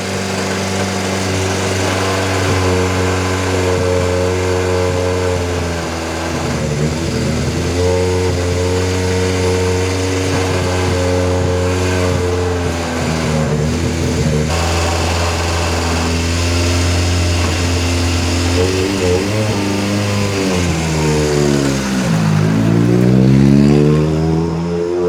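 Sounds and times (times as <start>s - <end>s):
engine running steadily: 0.0s - 25.0s.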